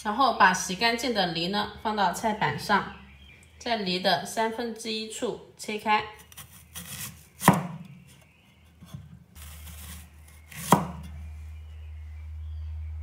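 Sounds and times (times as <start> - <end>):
knife slicing fruit: 6.2 - 8.0, 9.4 - 11.1
low steady hum: 9.4 - 13.0.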